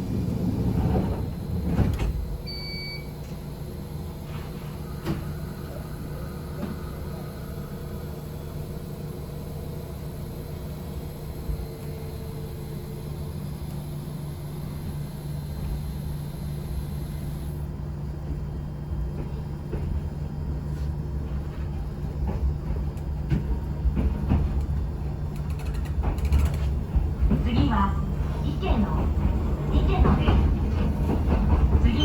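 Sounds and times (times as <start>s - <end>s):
train interior rumble: 0.0s - 32.0s
wheels clicking over track: 22.3s - 27.7s.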